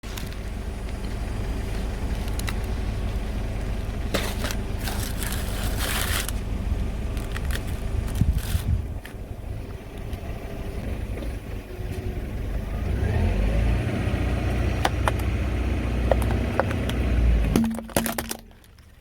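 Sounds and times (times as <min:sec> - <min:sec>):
car engine running low: 0:00.0 - 0:19.0
things cracking under tyres: 0:04.1 - 0:06.5, 0:07.1 - 0:09.2, 0:14.8 - 0:15.3, 0:16.0 - 0:19.0.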